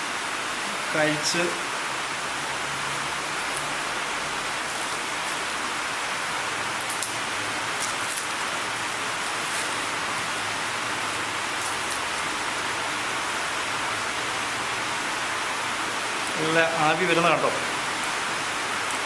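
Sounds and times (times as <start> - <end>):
fish sizzling in oil: 2.0 - 16.2.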